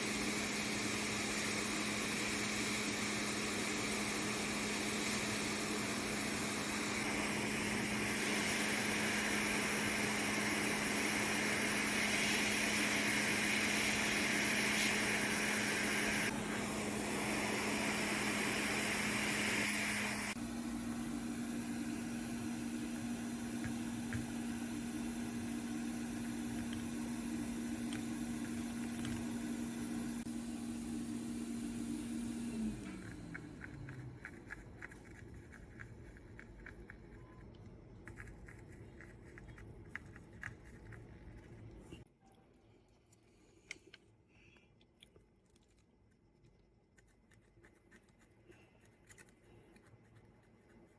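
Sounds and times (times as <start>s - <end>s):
small motor humming: 0.0s - 34.6s.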